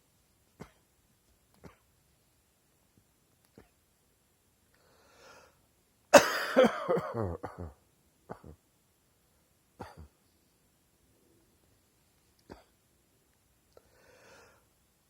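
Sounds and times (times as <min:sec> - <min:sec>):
breath in: 0:04.8 - 0:05.6, 0:13.8 - 0:14.7
person coughing: 0:06.2 - 0:08.6, 0:09.8 - 0:10.1.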